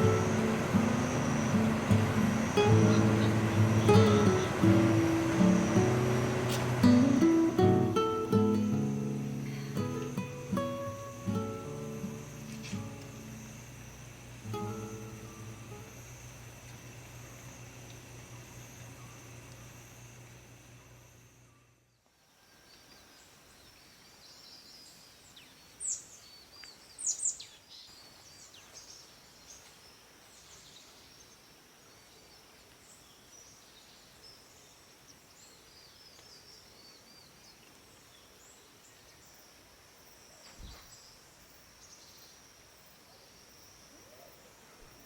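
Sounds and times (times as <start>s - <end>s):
faint high-pitched hum: 0.0s - 45.0s
forest birds chirping: 0.0s - 45.0s.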